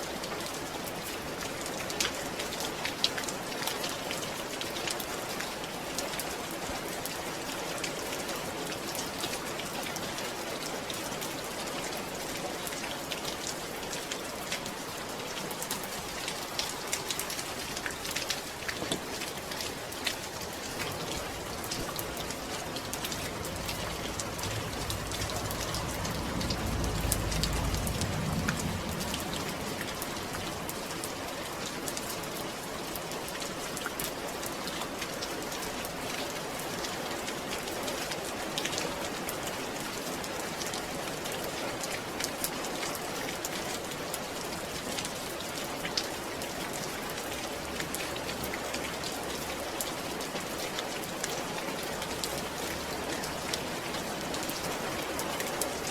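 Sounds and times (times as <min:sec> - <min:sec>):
rain pattering on a surface: 0:00.0 - 0:55.9
low rumble: 0:20.8 - 0:31.0.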